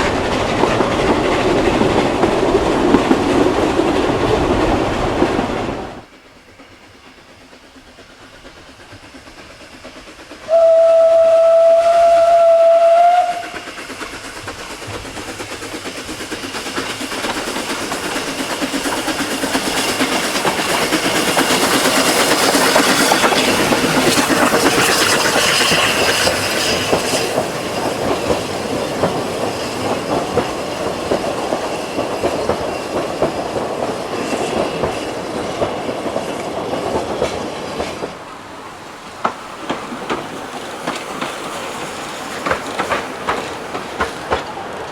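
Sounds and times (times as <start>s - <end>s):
train clattering rhythmically: 0.0s - 44.9s
steam train whistle blast: 10.4s - 13.7s.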